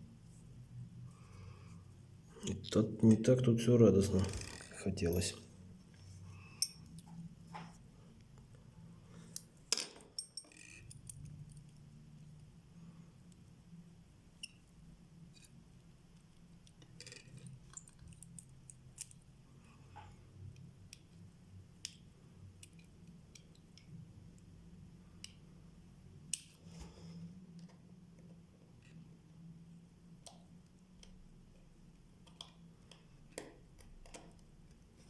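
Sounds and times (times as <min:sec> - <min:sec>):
small tools clicking and tapping metal: 0:06.6 - 0:07.2, 0:09.3 - 0:11.7.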